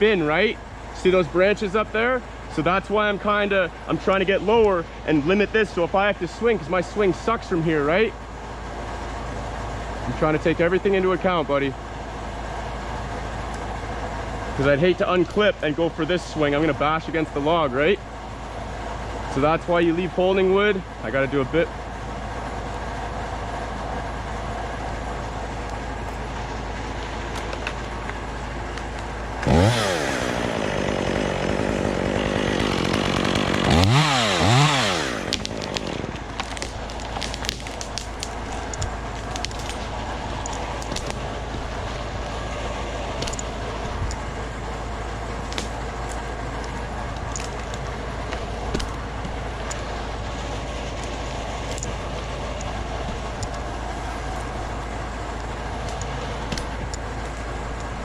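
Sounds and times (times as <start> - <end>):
steady engine hum: 0.0 - 58.0
chainsaw revving and cutting: 28.8 - 47.8.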